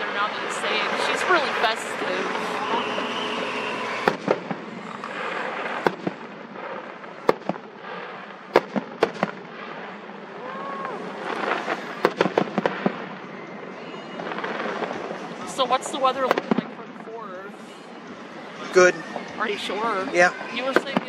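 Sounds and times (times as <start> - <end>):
firework bangs: 0.0 - 21.0
crackling firework pops: 3.9 - 13.5, 14.3 - 16.8.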